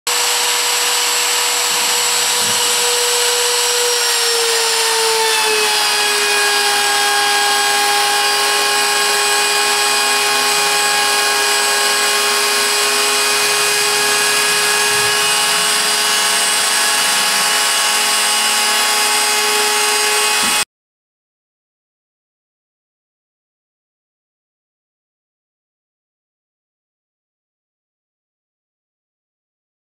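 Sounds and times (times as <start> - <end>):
wood cutting hiss: 0.1 - 6.4
router spindle whining: 0.1 - 20.6.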